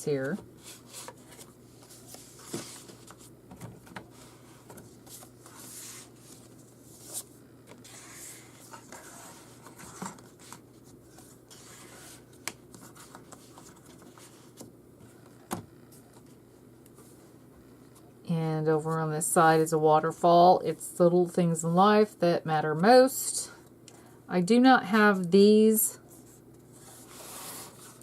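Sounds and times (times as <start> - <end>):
paper rustling and sliding: 0.6 - 15.2, 26.3 - 28.0.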